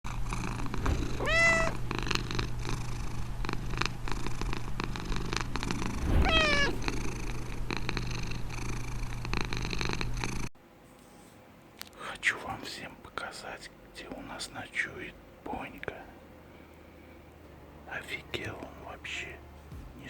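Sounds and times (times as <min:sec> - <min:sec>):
cat calls rising: 0:06.1 - 0:06.8.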